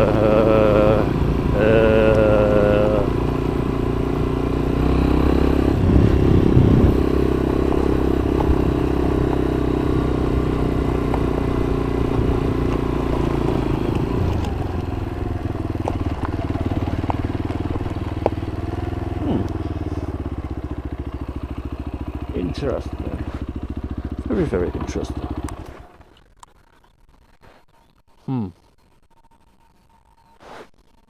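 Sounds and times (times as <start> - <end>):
motorcycle engine running: 0.0 - 27.3.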